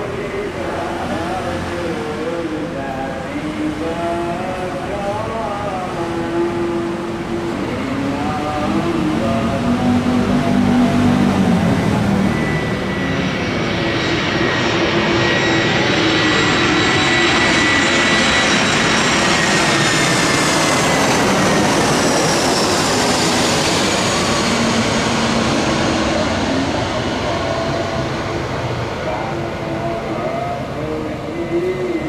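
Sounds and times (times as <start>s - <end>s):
airplane engines roaring: 0.0s - 32.0s.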